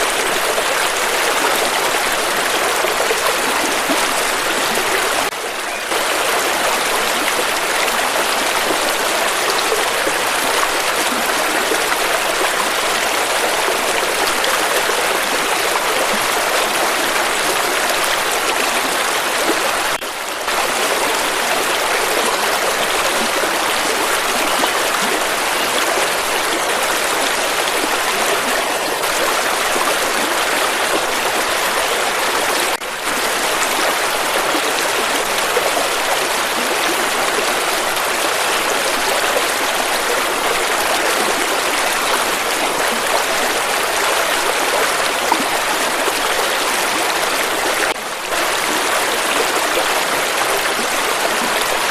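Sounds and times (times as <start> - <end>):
river water rushing: 0.0 - 51.9.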